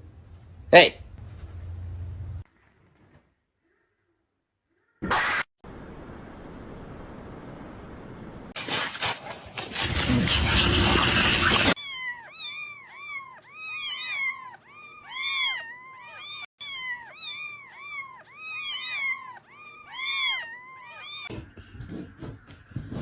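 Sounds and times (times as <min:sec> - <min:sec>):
kittens mewing: 0:11.6 - 0:21.3.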